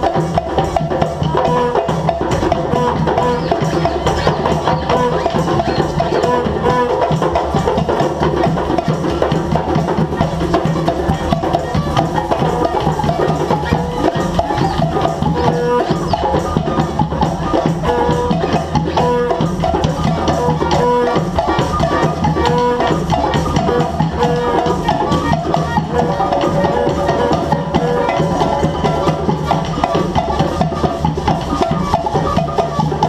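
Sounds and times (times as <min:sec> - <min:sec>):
drumming and hand percussion: 0:00.0 - 0:33.0.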